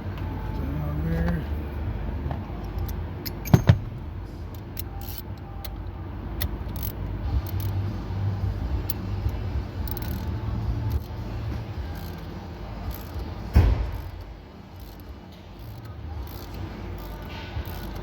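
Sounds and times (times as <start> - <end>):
steady low hum: 0.0 - 18.0
metal tools clinking: 2.7 - 4.0
sharp metal knocks: 3.3 - 4.1.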